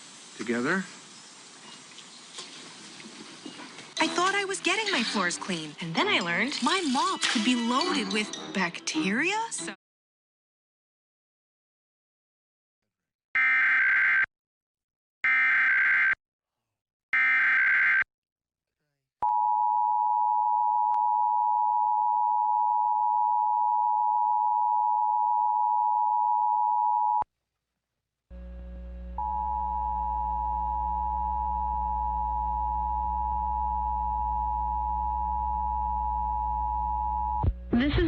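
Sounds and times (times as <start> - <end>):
low hum: 28.3 - 38.0
electronic alarm tone: 29.2 - 37.5.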